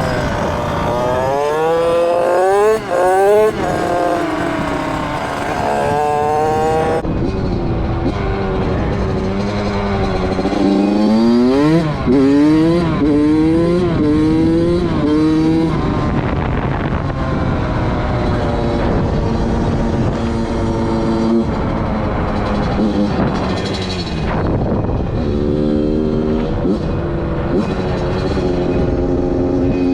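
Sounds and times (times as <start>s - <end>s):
dirt bike engine revving: 0.0s - 7.0s, 8.6s - 16.2s.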